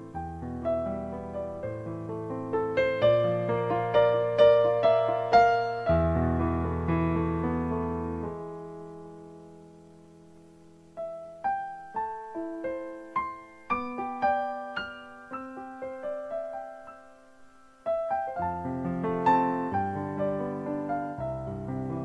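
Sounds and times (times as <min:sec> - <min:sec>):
slow piano music: 0:00.0 - 0:22.0.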